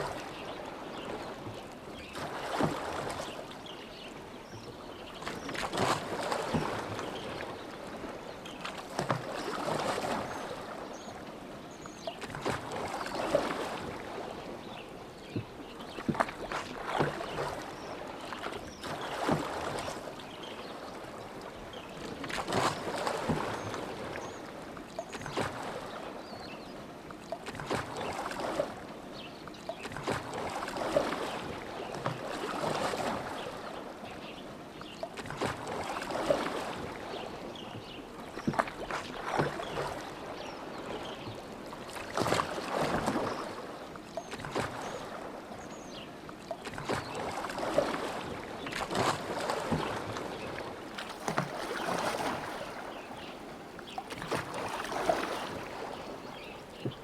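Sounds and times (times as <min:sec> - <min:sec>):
oars splashing through water: 0:00.0 - 0:57.0
sharp knocks of oars: 0:15.2 - 0:17.6, 0:51.0 - 0:57.0.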